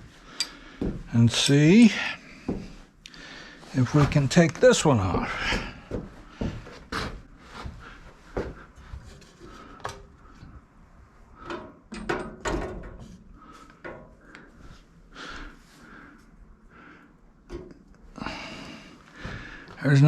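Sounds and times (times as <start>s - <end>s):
hand tools clinking on metal: 0.4s - 0.6s.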